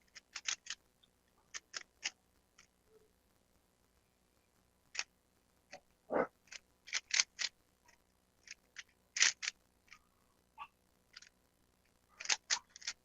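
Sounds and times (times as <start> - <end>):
plastic cube clicking and clacking: 0.1 - 0.8, 1.5 - 2.2, 6.5 - 7.5, 8.4 - 9.6, 12.2 - 13.0.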